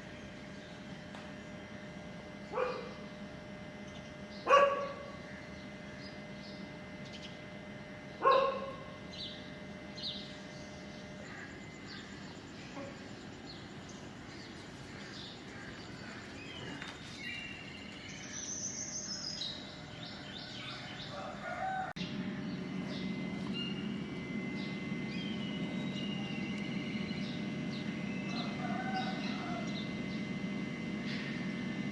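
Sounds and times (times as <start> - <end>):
dog barking: 2.5 - 2.9, 4.5 - 5.1, 8.2 - 8.8.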